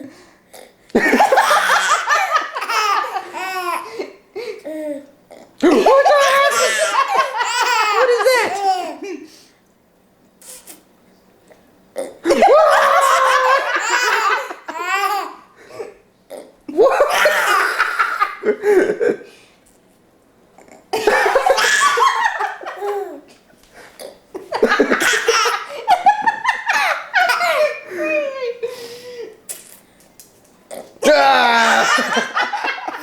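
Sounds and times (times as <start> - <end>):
laughter: 1.0 - 3.4, 5.7 - 9.2, 12.3 - 14.8, 16.7 - 19.3, 21.0 - 23.1, 24.4 - 28.8, 31.6 - 33.0.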